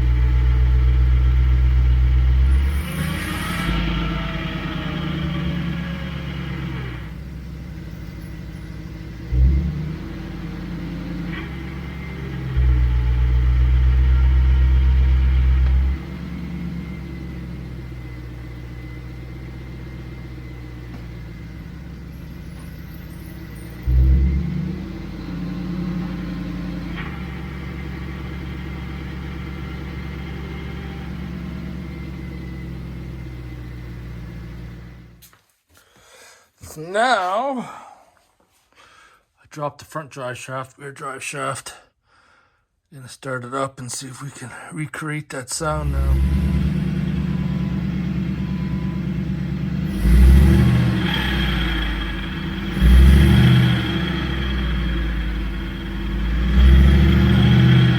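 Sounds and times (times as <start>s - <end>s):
engine hum with high whine: 0.0s - 35.2s, 45.6s - 57.9s
low drivetrain rumble: 0.0s - 35.2s, 45.6s - 57.9s
vehicle drivetrain running: 0.0s - 35.2s, 45.7s - 57.9s.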